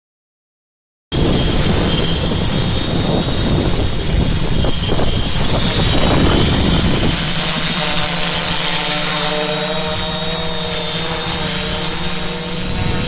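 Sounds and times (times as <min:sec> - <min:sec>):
drone motors and propellers: 0:01.1 - 0:13.0
wind rumble on microphone: 0:01.1 - 0:13.0.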